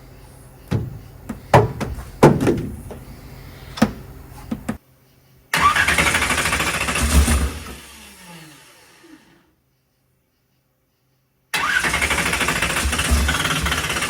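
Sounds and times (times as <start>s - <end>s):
sharp knocks and clanks: 0.7s - 3.2s, 3.8s - 4.8s
engine cranking on starter: 5.5s - 9.3s, 11.6s - 14.0s.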